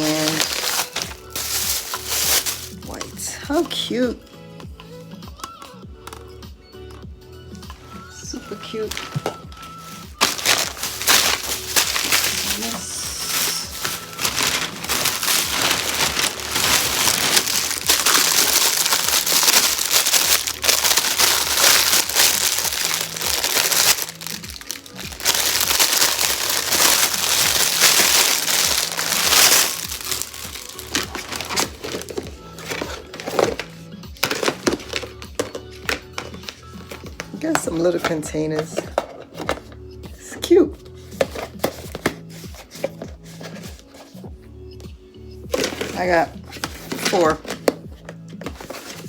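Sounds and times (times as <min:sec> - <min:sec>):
plastic packaging crinkling: 0:00.0 - 0:03.2, 0:08.3 - 0:37.6, 0:48.4 - 0:49.0
background music with low beat: 0:00.0 - 0:49.0.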